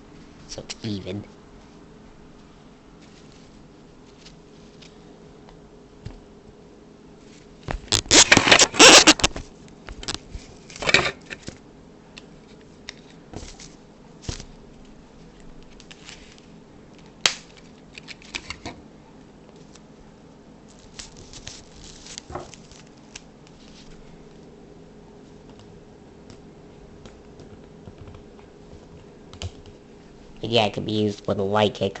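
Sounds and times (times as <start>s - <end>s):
tape and cardboard crackling: 7.7s - 11.6s, 12.4s - 18.7s, 20.7s - 24.0s.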